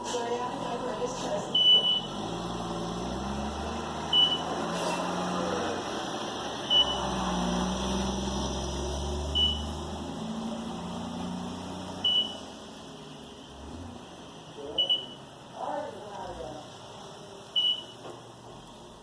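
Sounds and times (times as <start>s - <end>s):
high-pitched electronic beep: 1.5s - 2.2s, 4.1s - 4.5s, 6.7s - 7.1s, 9.4s - 9.8s, 12.0s - 12.4s, 14.8s - 15.2s.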